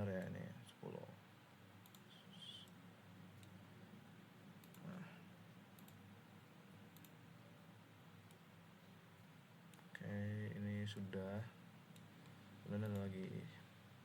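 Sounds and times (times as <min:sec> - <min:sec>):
computer mouse clicks: 0:01.8 - 0:02.8, 0:03.4 - 0:03.6, 0:04.6 - 0:05.0, 0:05.8 - 0:06.0, 0:06.9 - 0:07.2, 0:11.9 - 0:13.1.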